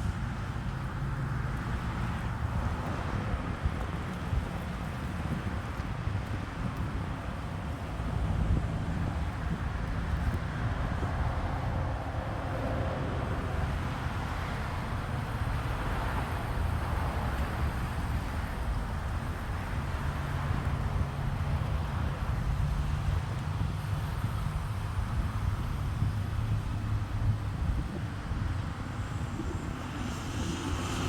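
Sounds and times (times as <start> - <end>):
wind buffeting microphone: 0.0 - 31.0
road traffic passing: 7.0 - 31.0.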